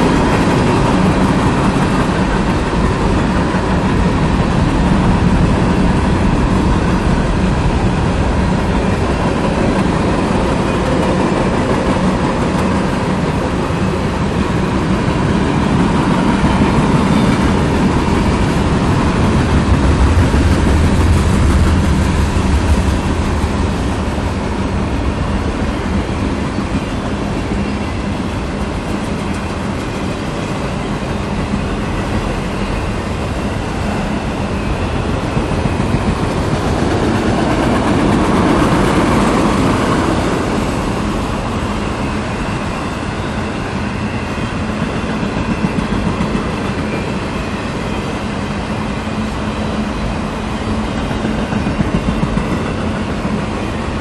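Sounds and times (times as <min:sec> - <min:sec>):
freight train rumbling past: 0:00.0 - 0:54.0.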